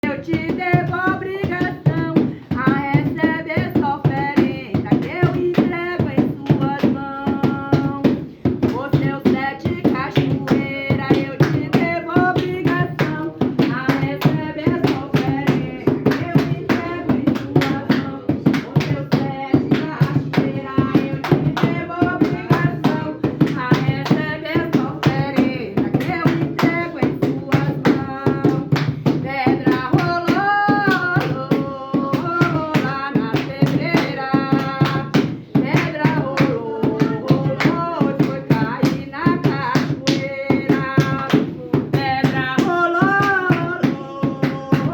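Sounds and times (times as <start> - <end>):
rhythmic hand clapping: 0.0 - 44.9
person singing a chant: 35.6 - 44.9.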